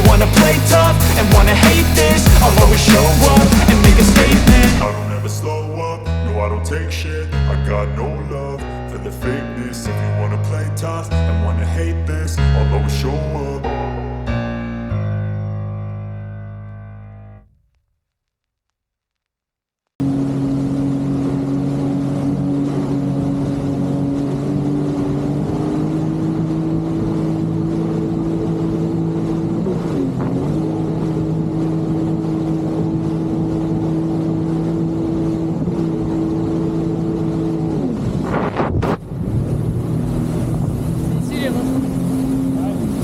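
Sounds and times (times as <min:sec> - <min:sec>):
jet ski engine running: 0:00.0 - 0:05.4, 0:20.0 - 0:43.0
wind and water noise: 0:20.1 - 0:43.0.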